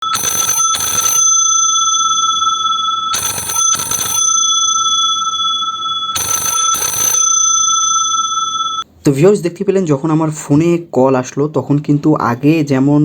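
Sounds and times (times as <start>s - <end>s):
steady high whine: 0.0s - 8.8s
telephone bell ringtone: 0.0s - 8.8s.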